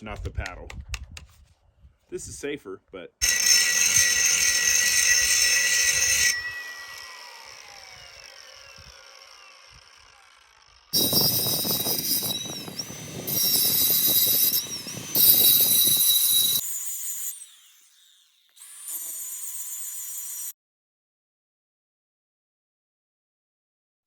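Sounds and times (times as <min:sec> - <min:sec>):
angle grinder whine: 0:03.2 - 0:20.5
grinder scraping: 0:03.2 - 0:20.5.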